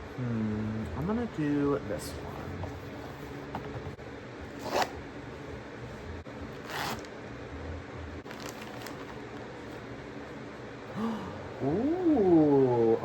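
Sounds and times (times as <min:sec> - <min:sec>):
packaging tearing rustles: 0:08.2 - 0:09.2.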